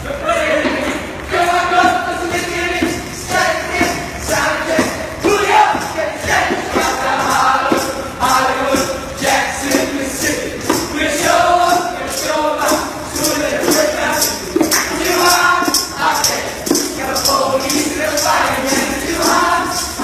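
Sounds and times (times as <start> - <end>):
voices singing: 0.0 - 20.0
percussion beat: 0.4 - 20.0.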